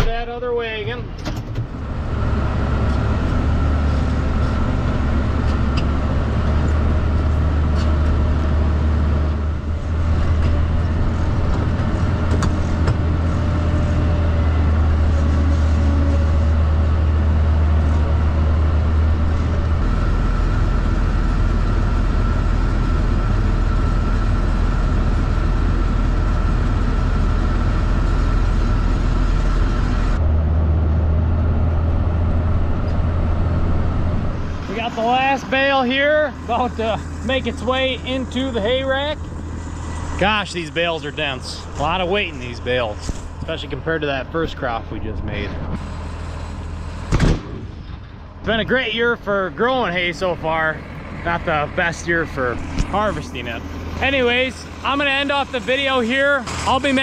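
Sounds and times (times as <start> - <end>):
tractor diesel engine droning: 0.0 - 57.0.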